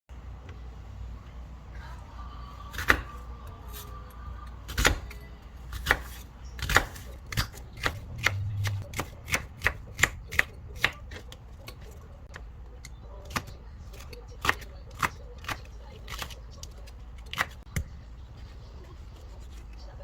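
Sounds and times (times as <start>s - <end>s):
knife chopping on cutting board: 4.7s - 11.9s.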